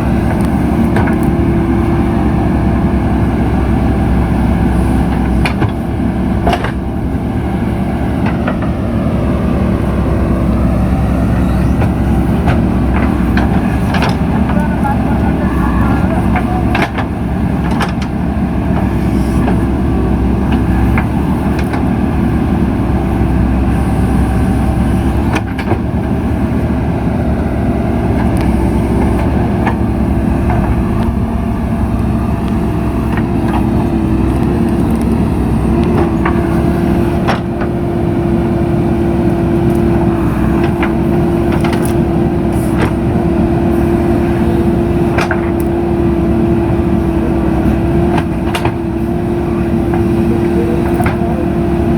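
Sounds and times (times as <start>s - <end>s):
diesel engine running: 0.0s - 51.9s
steady hum: 28.1s - 36.3s.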